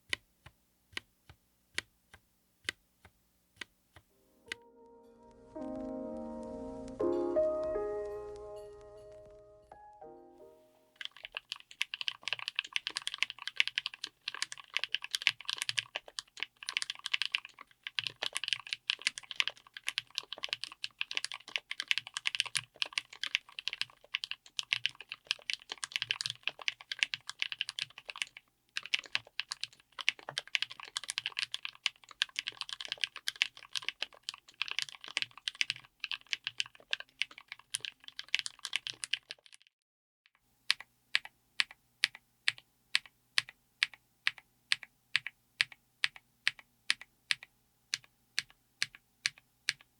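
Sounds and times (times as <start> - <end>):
mechanical keyboard typing: 11.0 - 39.7, 40.7 - 49.9.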